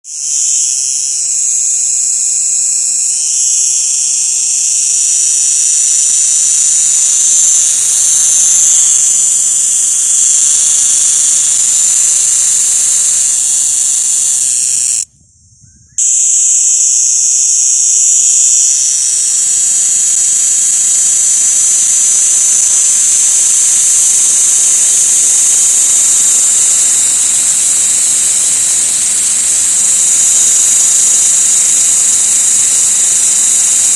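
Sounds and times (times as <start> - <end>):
insect buzzing: 0.0 - 33.9.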